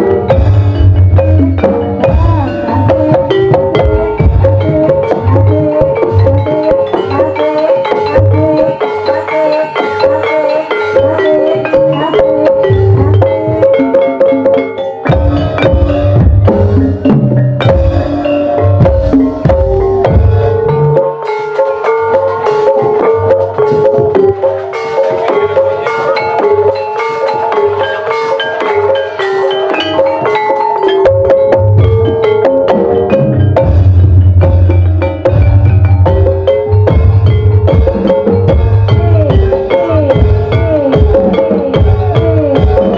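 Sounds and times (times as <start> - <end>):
low drum beats: 0.0 - 7.2, 11.5 - 21.0, 31.1 - 42.9
mallet-struck tuned percussion melody: 0.0 - 42.9.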